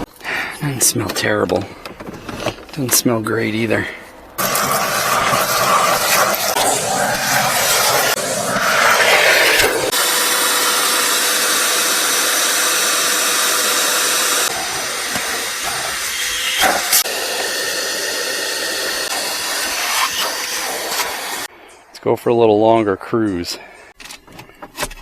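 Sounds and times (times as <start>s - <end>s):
blower fan rushing air: 4.4s - 21.5s.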